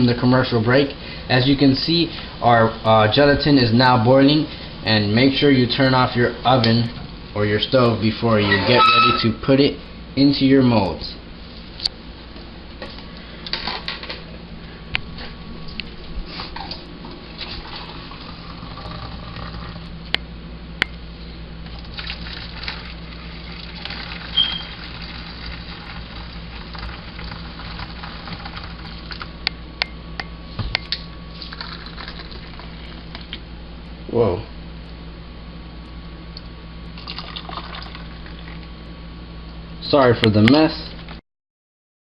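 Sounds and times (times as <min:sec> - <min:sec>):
steady low hum: 0:00.0 - 0:41.2
liquid pouring: 0:17.3 - 0:19.8, 0:21.7 - 0:29.3, 0:31.3 - 0:33.4, 0:37.0 - 0:38.7.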